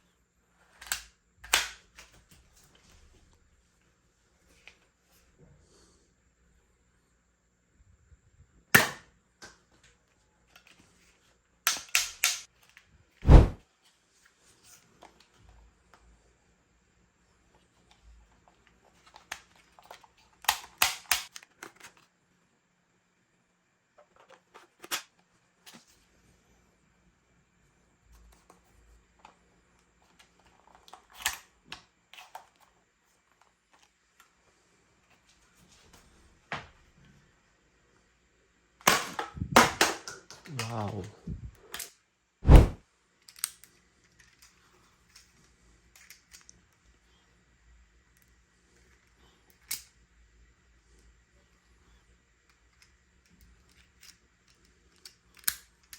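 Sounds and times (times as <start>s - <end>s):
plastic toy gun clicks: 0.8s - 2.1s, 11.7s - 12.5s, 20.4s - 21.7s, 55.0s - 55.9s
toy gun plastic clicks: 11.7s - 12.5s, 19.1s - 21.8s, 53.5s - 55.9s
heavy thump: 13.3s - 13.6s, 42.4s - 42.8s.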